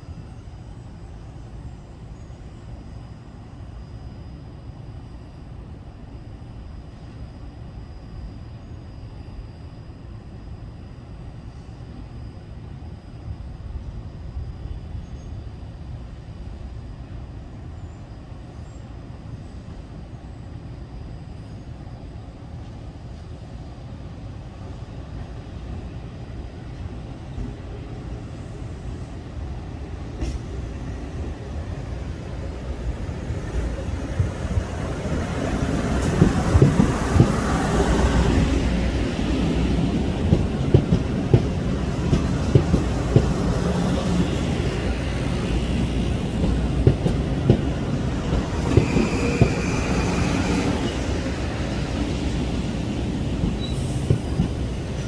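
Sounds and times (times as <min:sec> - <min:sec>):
passenger train rumble: 0:00.0 - 0:55.0
train wheels clicking over track: 0:30.0 - 0:31.9, 0:32.6 - 0:55.0.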